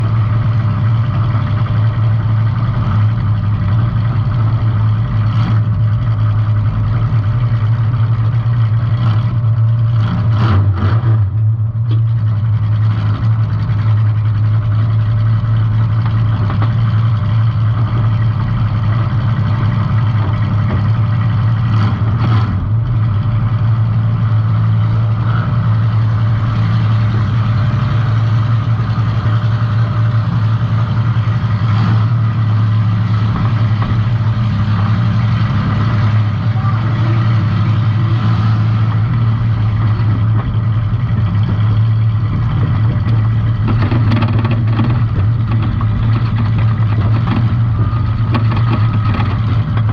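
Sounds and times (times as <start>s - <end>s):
car engine running loud: 0.0s - 49.9s.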